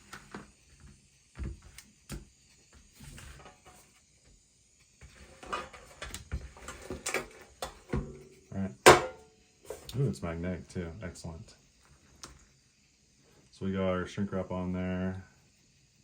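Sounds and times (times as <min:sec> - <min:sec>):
objects knocking on a workbench: 0:08.9 - 0:09.9.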